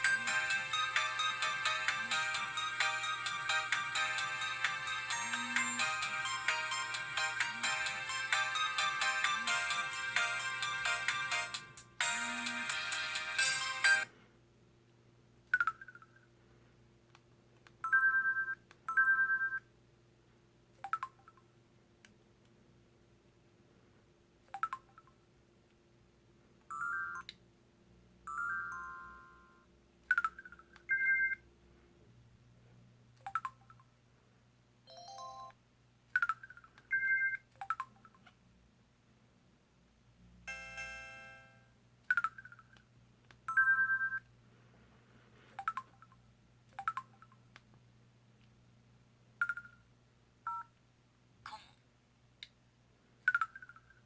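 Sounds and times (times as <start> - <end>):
phone electronic beeps and chirps: 28.3 - 31.4, 36.3 - 37.8.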